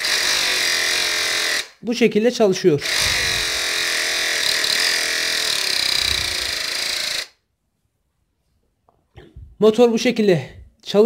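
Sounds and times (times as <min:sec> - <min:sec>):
small electric motor whirring: 0:00.0 - 0:01.8, 0:02.8 - 0:07.4.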